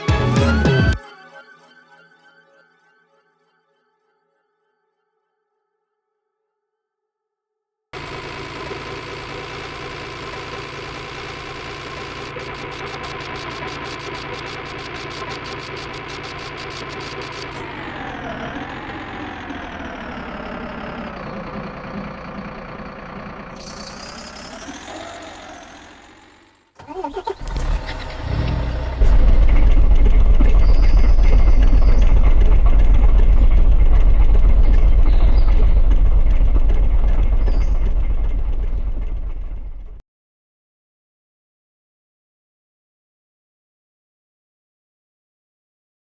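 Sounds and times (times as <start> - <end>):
background music ringing out: 0.0 - 3.7
truck engine running: 8.0 - 40.0.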